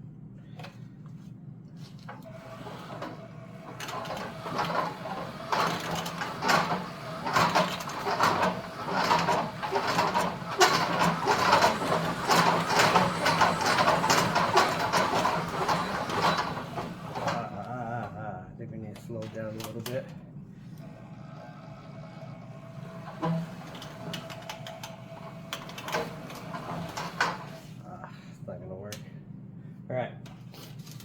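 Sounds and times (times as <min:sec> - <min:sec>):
wire and spool clattering: 0:02.0 - 0:18.2, 0:22.8 - 0:27.7.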